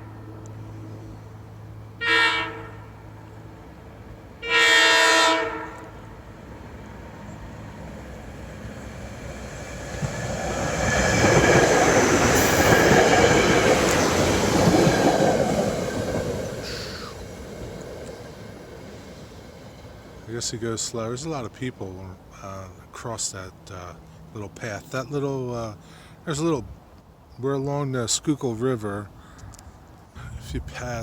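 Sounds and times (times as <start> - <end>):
train running past: 0.0 - 26.6
train horn blasts: 2.0 - 3.1, 4.4 - 6.1.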